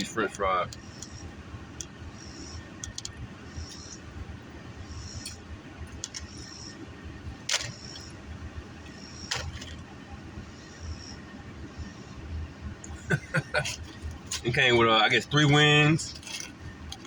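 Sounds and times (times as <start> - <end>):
steady low rumble: 0.0 - 17.0.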